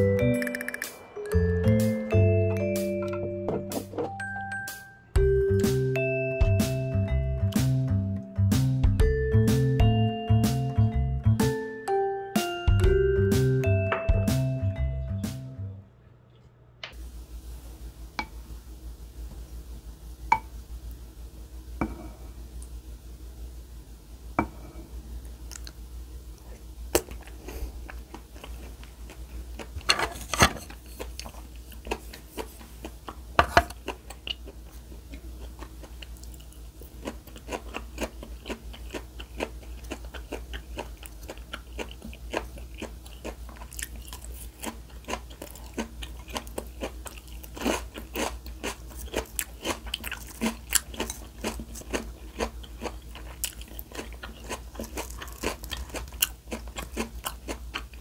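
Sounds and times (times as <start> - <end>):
crunching of food: 25.4 - 58.0.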